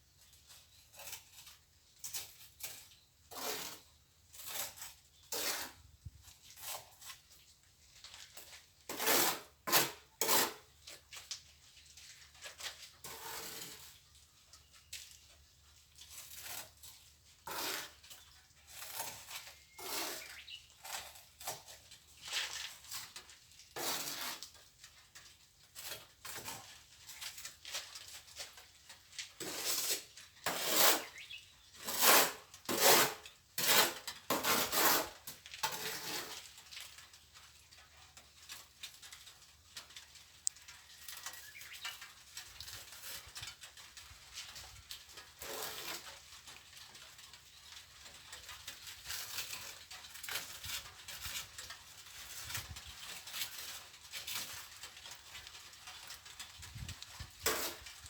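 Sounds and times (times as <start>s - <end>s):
trowel scraping cement mortar: 0.5s - 7.3s, 8.3s - 11.2s, 12.5s - 14.0s, 16.0s - 24.6s, 25.8s - 28.6s, 29.4s - 36.7s, 45.1s - 46.5s, 56.8s - 58.0s.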